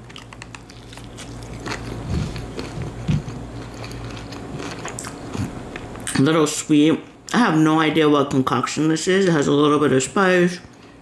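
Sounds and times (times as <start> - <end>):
person chewing food: 0.0 - 6.1
faint low hum: 0.0 - 11.0.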